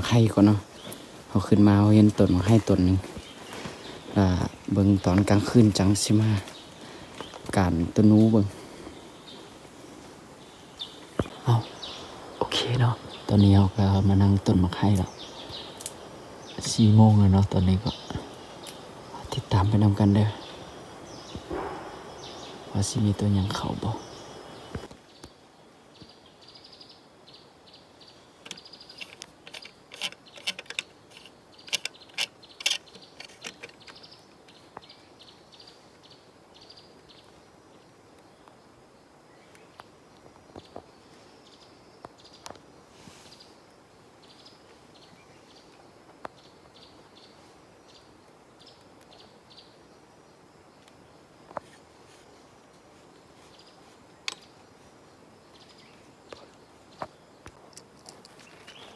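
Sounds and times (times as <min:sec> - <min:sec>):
small birds chirping: 0:00.0 - 0:58.9
sharp clicks and knocks: 0:28.4 - 0:34.6.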